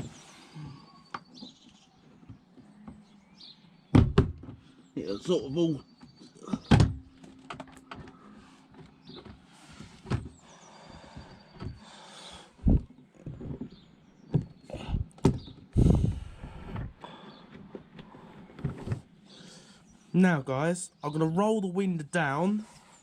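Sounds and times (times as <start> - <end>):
plastic scraping and rustling: 12.6 - 14.6, 15.2 - 19.2.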